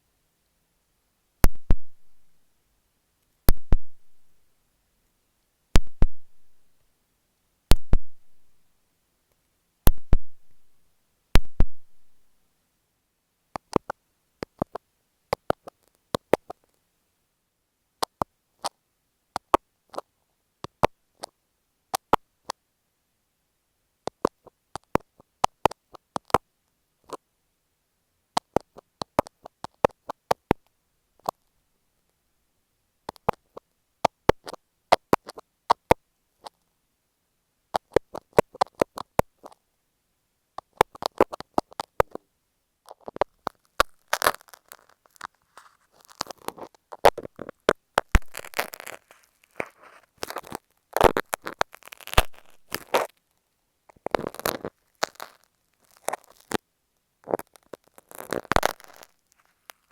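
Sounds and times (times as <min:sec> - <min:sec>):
light clicks and taps on microphone: 0:01.4 - 0:02.3, 0:03.4 - 0:04.2, 0:05.8 - 0:06.5, 0:07.7 - 0:08.5, 0:11.4 - 0:12.1, 0:13.5 - 0:16.8, 0:24.1 - 0:26.4, 0:28.4 - 0:31.5, 0:33.1 - 0:36.7, 0:37.8 - 0:39.6, 0:40.6 - 0:42.2, 0:42.8 - 0:56.6, 0:57.2 - 0:59.9.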